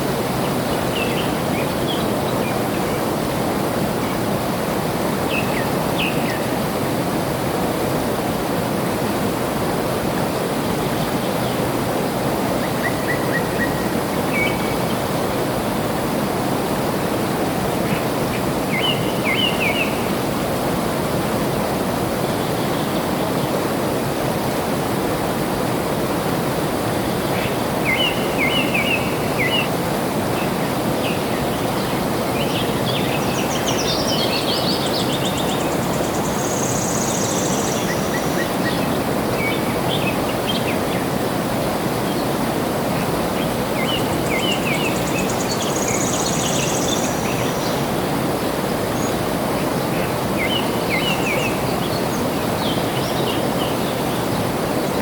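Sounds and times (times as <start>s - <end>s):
flowing water rushing: 0.0s - 55.0s
birds singing: 17.8s - 20.2s, 27.1s - 41.2s, 43.0s - 55.0s.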